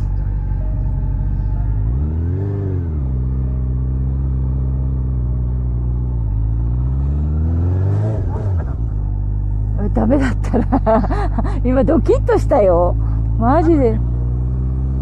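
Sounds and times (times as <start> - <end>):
motorcycle engine revving: 0.0 - 15.0.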